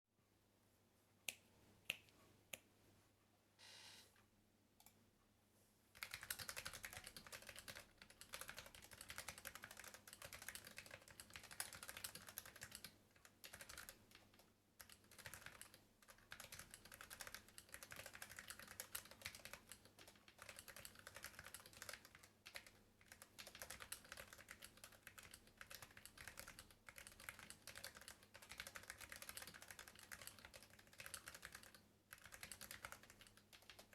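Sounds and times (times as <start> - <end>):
mechanical keyboard typing: 6.0 - 33.9.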